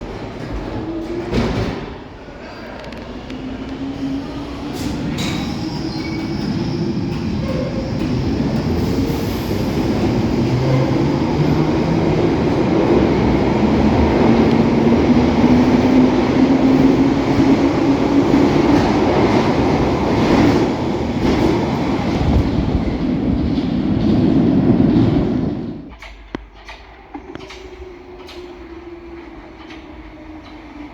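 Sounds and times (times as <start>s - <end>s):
train wheels rumbling on rails: 0.0s - 30.9s.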